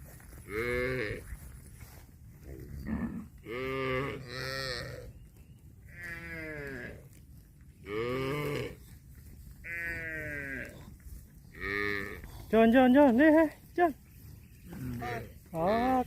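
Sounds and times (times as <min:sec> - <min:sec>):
cattle mooing: 0:02.8 - 0:05.0, 0:07.8 - 0:08.8, 0:09.6 - 0:10.9, 0:11.5 - 0:12.4, 0:14.7 - 0:16.0.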